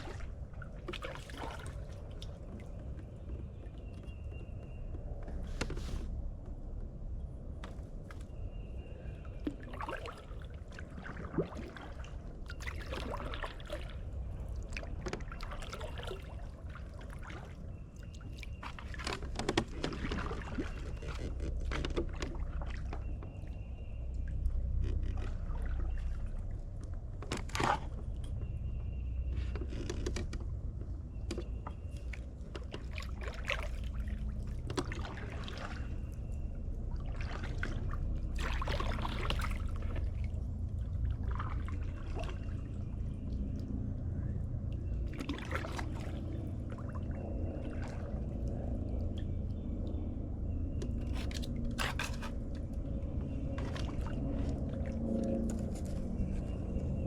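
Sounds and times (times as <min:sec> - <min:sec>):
kayak paddle splashing water: 0:00.0 - 0:03.0, 0:09.4 - 0:23.3, 0:32.0 - 0:42.9, 0:45.0 - 0:49.1, 0:50.7 - 0:55.5.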